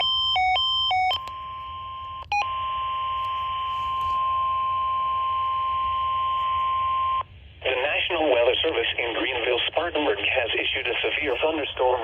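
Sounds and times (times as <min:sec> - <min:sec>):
steady warning alarm tone: 0:00.0 - 0:07.4.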